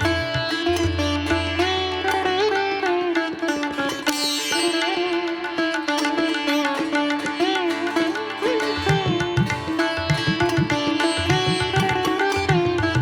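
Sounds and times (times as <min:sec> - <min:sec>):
plucked string melody: 0:00.0 - 0:13.0.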